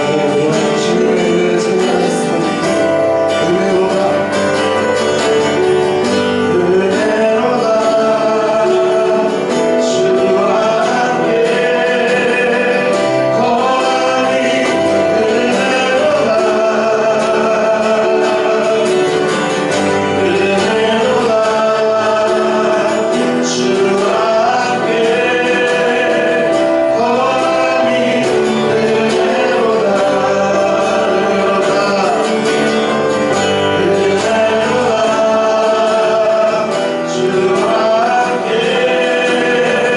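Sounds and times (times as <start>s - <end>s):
group singing worship song: 0.0s - 39.9s
instrumental accompaniment: 0.0s - 39.9s.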